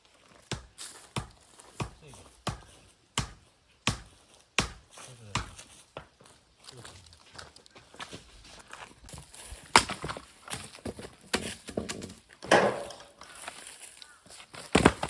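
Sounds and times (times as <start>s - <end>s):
wood clattering: 9.6s - 13.6s
splitting tool striking logs: 9.7s - 13.3s, 14.7s - 15.0s.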